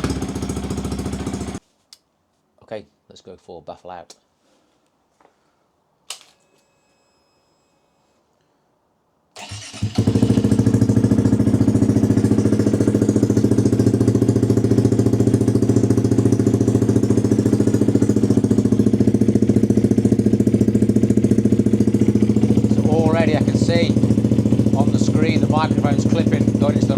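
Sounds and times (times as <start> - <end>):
motorcycle engine idling: 0.0 - 1.6, 9.4 - 26.9
motorcycle starter cranking: 0.0 - 1.6, 9.4 - 26.9.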